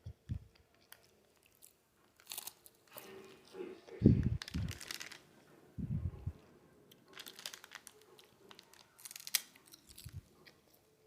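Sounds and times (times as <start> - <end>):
dried seaweed crinkling and crunching: 0.8 - 3.6, 4.4 - 5.3, 7.0 - 10.7.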